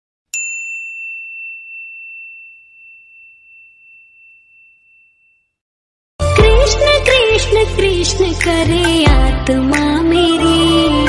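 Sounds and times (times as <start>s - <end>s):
metallic chime ding: 0.4s - 5.6s.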